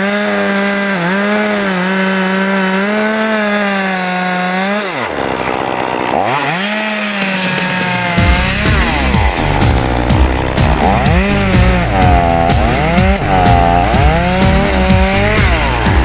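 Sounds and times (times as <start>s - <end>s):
chainsaw revving and idling: 0.0s - 16.0s
low knocks: 7.5s - 16.0s.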